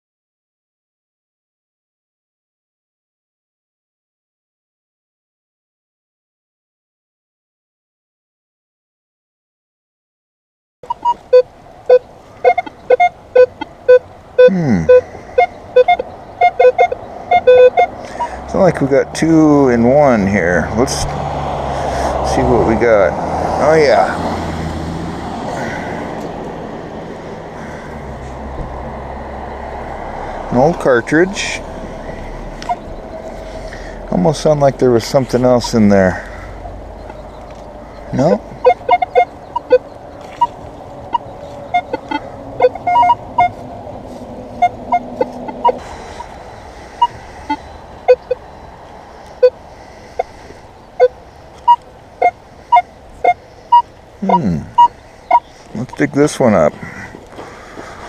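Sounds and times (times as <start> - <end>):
metal detector beeps: 10.8 - 18.4, 32.6 - 33.2, 38.2 - 43.6, 44.6 - 45.8, 47.0 - 48.4, 51.0 - 56.1
engine humming: 10.8 - 58.0.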